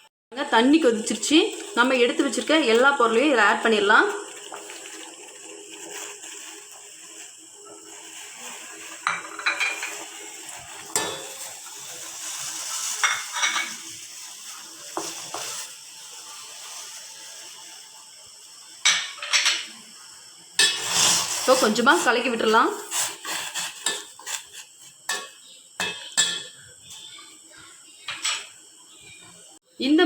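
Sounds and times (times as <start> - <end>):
boiling water hiss: 0.0 - 30.0
spoons clinking against pot: 9.0 - 10.1, 13.0 - 13.9, 20.6 - 20.9, 23.6 - 26.6, 28.1 - 28.5.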